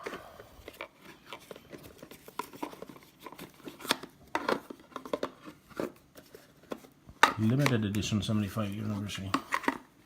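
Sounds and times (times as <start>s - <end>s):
cardboard packaging rustling: 0.0s - 8.0s.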